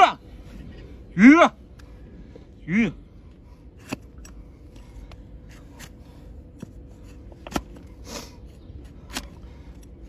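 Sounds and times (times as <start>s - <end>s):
tool scraping hoof: 3.8s - 9.5s
hoof trimming tools snipping: 3.8s - 10.0s.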